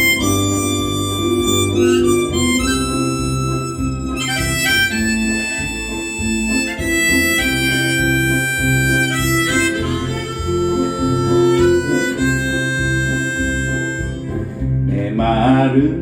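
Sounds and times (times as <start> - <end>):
harmonica melody: 0.0 - 14.9
guitar accompaniment: 0.0 - 16.0.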